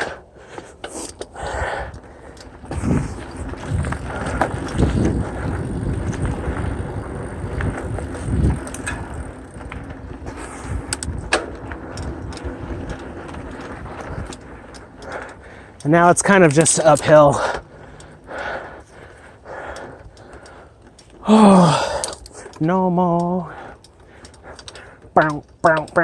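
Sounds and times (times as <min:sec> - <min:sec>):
bike rattling over bumps: 0:00.0 - 0:26.0
bike tyre and drivetrain noise: 0:00.0 - 0:26.0
sharp clicks: 0:10.5 - 0:26.0.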